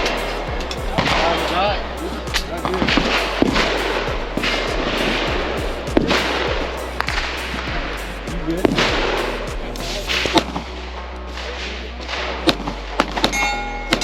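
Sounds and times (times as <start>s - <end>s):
echoing gunshots: 0.0s - 7.9s, 8.6s - 14.0s
background music: 0.0s - 14.0s
steel targets ringing: 13.2s - 14.0s.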